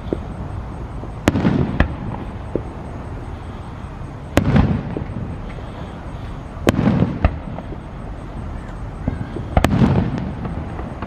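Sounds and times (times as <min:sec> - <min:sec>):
fireworks bursting: 0:00.0 - 0:11.0.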